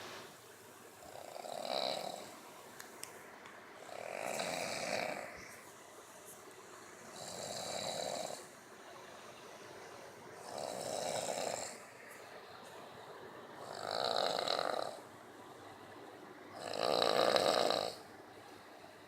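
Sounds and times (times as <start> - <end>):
person snoring loudly: 1.1 - 2.3, 3.8 - 5.5, 7.1 - 8.5, 10.4 - 11.8, 13.6 - 15.0, 16.6 - 18.0
quiet breathing: 3.8 - 19.0.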